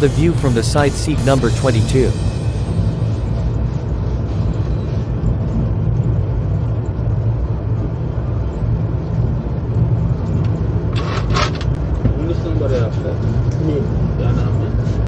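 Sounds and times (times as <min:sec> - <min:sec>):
train rumbling: 0:00.0 - 0:07.9.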